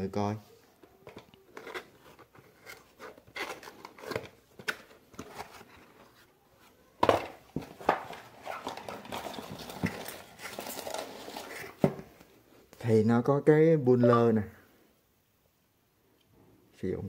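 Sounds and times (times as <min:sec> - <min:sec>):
plastic parts rustling and scraping: 0:00.8 - 0:12.3.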